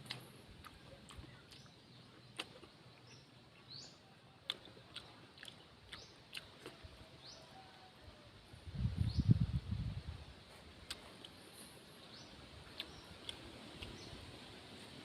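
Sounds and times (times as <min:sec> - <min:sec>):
chewing and lip smacks: 0:00.0 - 0:07.7, 0:10.5 - 0:11.5, 0:12.6 - 0:14.2.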